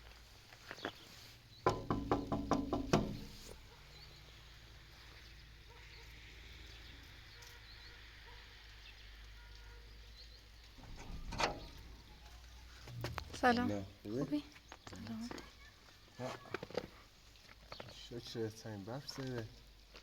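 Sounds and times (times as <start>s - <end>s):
sharp knocks: 1.6s - 3.4s.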